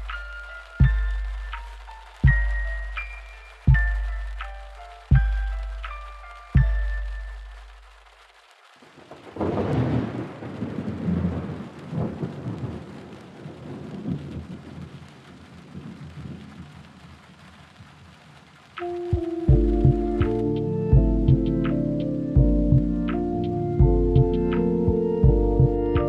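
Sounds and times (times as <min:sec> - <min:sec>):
rain hissing: 0:00.0 - 0:26.0
thunder rumbling crack: 0:00.0 - 0:26.0.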